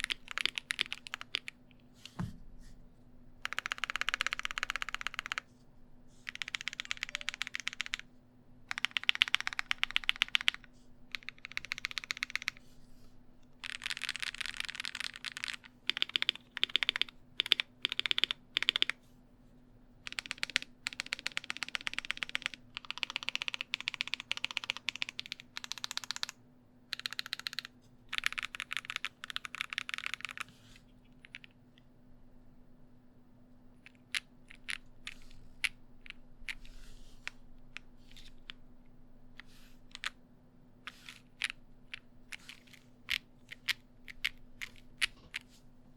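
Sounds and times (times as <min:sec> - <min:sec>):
mechanical keyboard typing: 0:00.0 - 0:01.6, 0:03.4 - 0:05.5, 0:06.3 - 0:08.1, 0:08.7 - 0:12.6, 0:13.6 - 0:19.0, 0:20.0 - 0:30.5, 0:33.9 - 0:36.6, 0:40.9 - 0:45.5.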